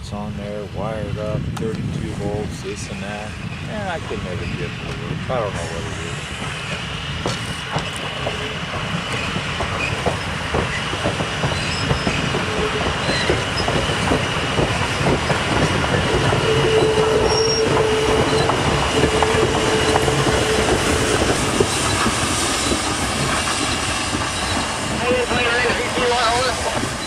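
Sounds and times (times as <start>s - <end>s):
train wheels clicking over rails: 1.5s - 27.0s
high wheel squeal: 5.5s - 15.1s, 15.9s - 27.0s
low steady squeal: 16.3s - 27.0s.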